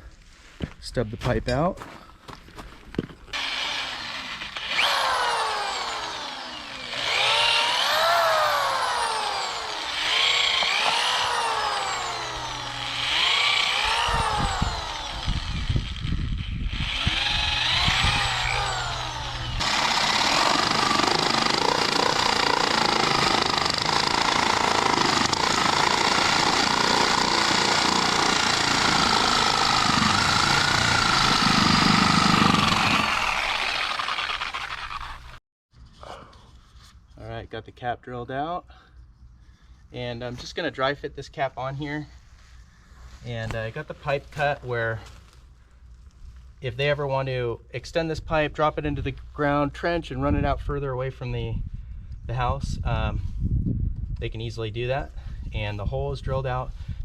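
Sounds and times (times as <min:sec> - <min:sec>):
power drill boring: 0:03.3 - 0:35.4.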